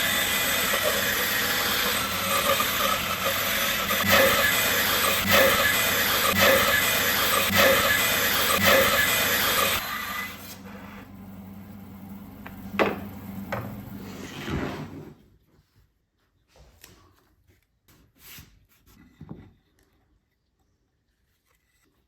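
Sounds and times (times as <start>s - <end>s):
wood lathe cutting rasp: 0.0s - 11.2s
lathe motor hum: 0.0s - 14.3s.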